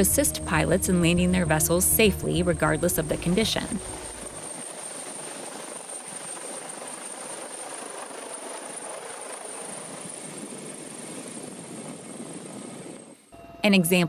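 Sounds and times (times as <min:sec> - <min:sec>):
thin high whine: 0:00.0 - 0:06.5
helicopter rotor and engine: 0:00.0 - 0:13.3.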